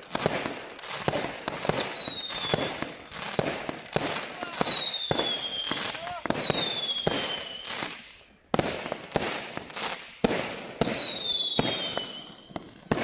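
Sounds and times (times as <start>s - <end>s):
firework bangs with crackle: 0.0s - 13.0s
firework whistle gliding down: 1.6s - 2.8s, 4.4s - 8.0s, 10.8s - 12.6s.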